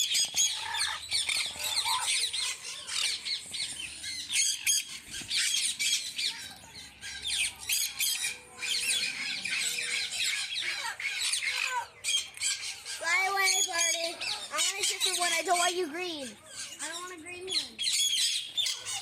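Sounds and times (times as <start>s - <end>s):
parrots squawking and screeching: 0.0s - 19.0s.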